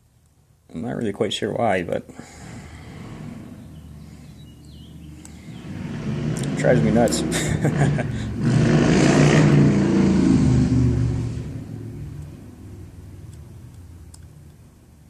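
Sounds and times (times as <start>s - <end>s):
vehicle engine running: 2.6s - 14.4s.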